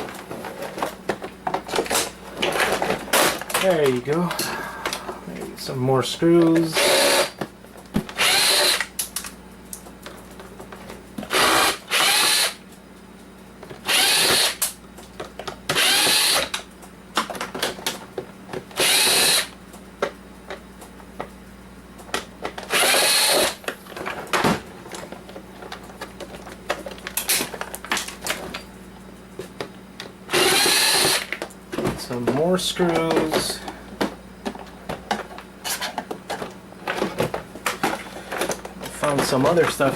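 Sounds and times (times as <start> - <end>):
power drill running in bursts: 6.8 - 7.4, 8.2 - 8.9, 11.3 - 12.6, 13.8 - 14.6, 15.8 - 16.5, 18.8 - 19.5, 22.7 - 23.6, 30.3 - 31.3.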